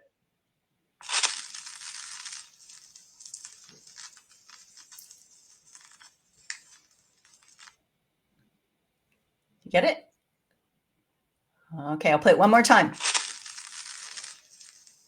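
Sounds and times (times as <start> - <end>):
vinyl crackle and pops: 1.0 - 7.8, 12.4 - 15.0.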